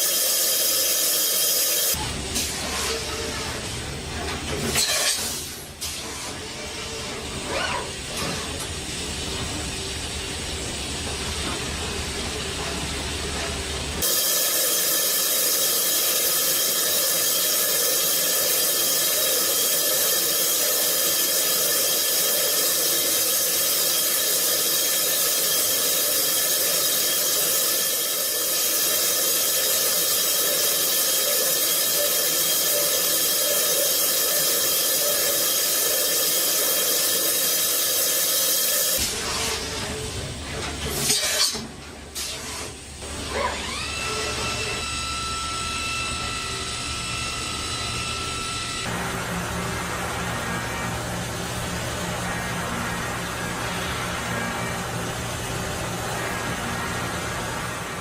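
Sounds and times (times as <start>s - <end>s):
machine tool hiss and whine: 0.0s - 4.1s, 4.7s - 58.0s
machine tool hum: 43.0s - 58.0s.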